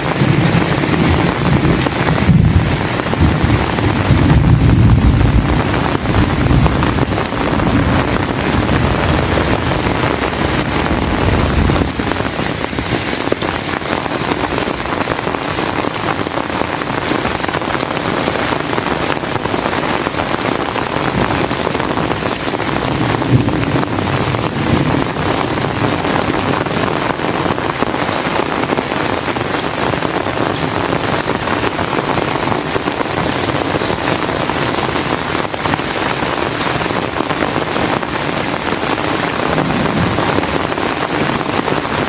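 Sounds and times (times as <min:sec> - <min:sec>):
heavy rain pouring: 0:00.0 - 0:42.0
low rumble: 0:00.2 - 0:12.8, 0:39.1 - 0:41.4.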